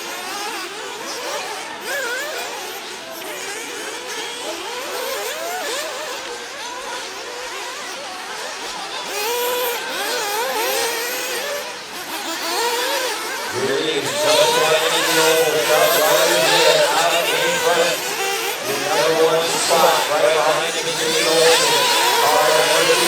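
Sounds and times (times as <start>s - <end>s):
small engines whining: 0.0s - 23.0s.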